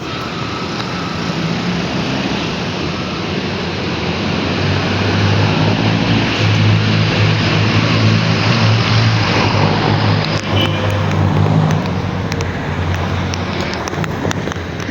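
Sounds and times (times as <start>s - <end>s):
motorcycle engine running: 0.0s - 14.9s
wind and road noise: 0.0s - 14.9s.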